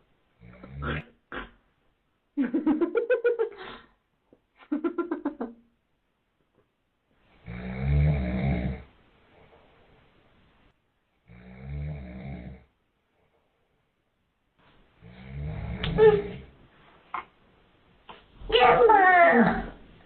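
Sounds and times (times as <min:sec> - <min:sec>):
man snoring: 0:07.4 - 0:08.9, 0:11.3 - 0:12.7, 0:15.0 - 0:15.8.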